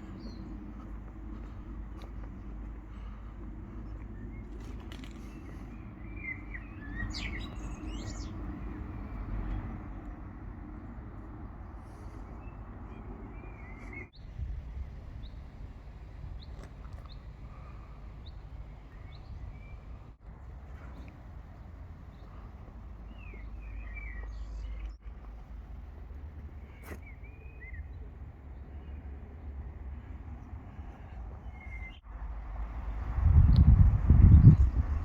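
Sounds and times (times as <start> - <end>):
small birds chirping: 0.0 - 10.2, 11.3 - 25.1, 26.4 - 32.1
low outdoor rumble: 0.0 - 35.0.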